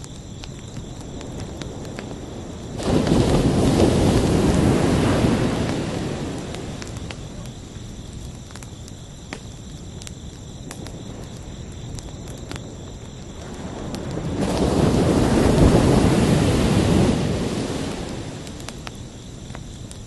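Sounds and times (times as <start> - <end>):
crickets chirping: 0.0 - 20.0
ocean wave surging and washing: 2.8 - 7.3, 13.5 - 18.7.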